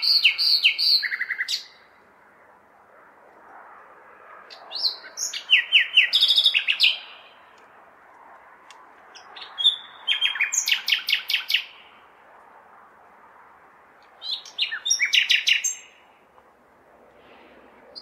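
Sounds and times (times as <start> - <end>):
nightingale singing: 0.0 - 1.9, 4.5 - 7.4, 9.2 - 11.8, 14.2 - 16.0
city background hum: 0.0 - 18.0.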